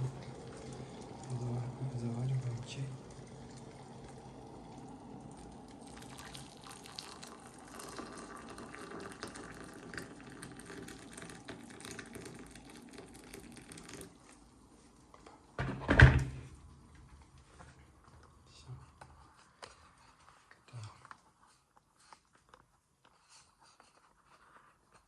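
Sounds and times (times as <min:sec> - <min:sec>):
water pouring into a cup: 0:00.0 - 0:15.6
loud thump: 0:15.6 - 0:16.5.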